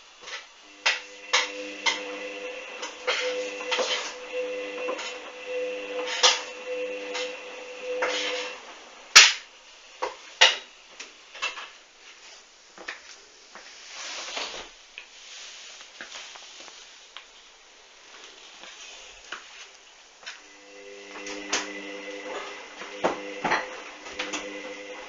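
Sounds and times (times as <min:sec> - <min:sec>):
washing machine motor hum: 0:00.0 - 0:10.6, 0:20.3 - 0:25.0
faint hiss: 0:00.0 - 0:25.0.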